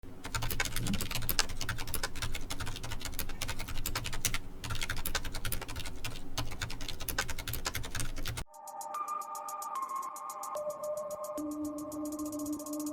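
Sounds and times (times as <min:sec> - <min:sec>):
fast typing on mechanical keyboard: 0:00.2 - 0:08.4.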